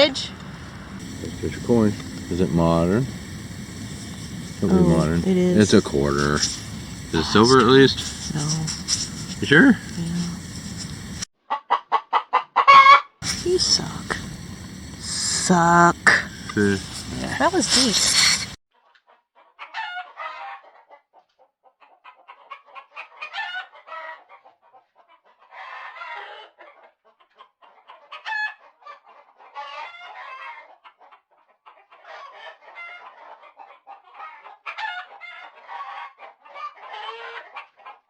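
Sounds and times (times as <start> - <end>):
flock of birds calling: 0.0 - 11.3, 13.2 - 18.6.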